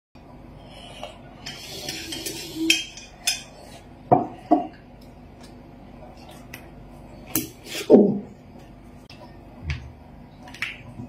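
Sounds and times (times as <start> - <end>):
utensils clinking against dishes: 1.4 - 3.8.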